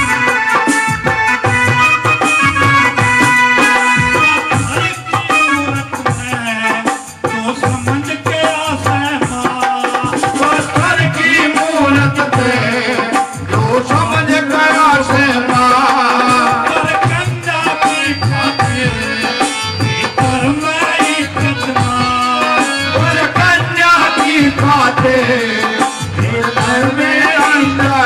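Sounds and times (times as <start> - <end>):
hand drum rhythm: 0.0 - 28.0
ornamented folk melody: 13.6 - 28.0.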